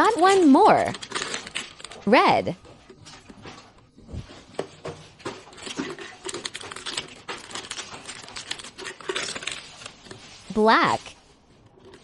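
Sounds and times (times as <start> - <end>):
plastic packaging crinkling: 0.0 - 2.0, 5.2 - 10.5.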